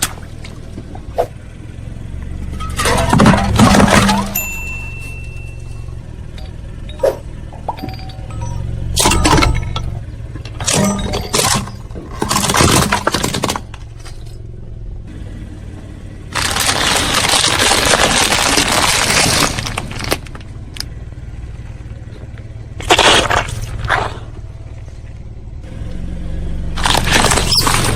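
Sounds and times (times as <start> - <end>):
car engine hum: 0.0 - 27.9
tyre crushing brittle objects: 10.6 - 14.3, 16.3 - 20.5, 22.8 - 24.4, 26.8 - 27.9.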